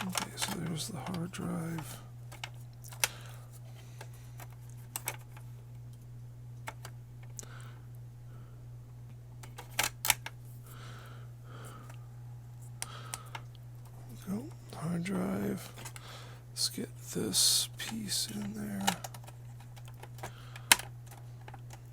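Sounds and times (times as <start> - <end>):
plastic and metal parts clicking: 0.0 - 3.2, 17.9 - 21.9
steady low hum: 0.0 - 21.9.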